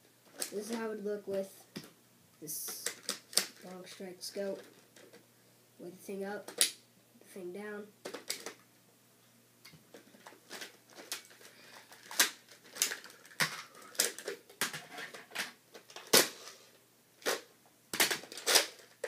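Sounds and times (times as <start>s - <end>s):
plastic toy parts clicking: 8.0s - 8.6s, 10.2s - 16.3s, 17.2s - 19.0s.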